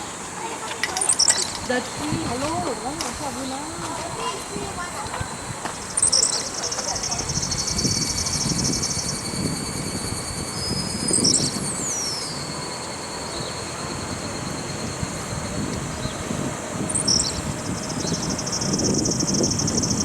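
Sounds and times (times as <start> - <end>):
high insect drone: 0.0 - 20.0
low outdoor rumble: 0.0 - 20.0
bird chirps: 0.8 - 20.0
falling whistle: 5.3 - 16.1.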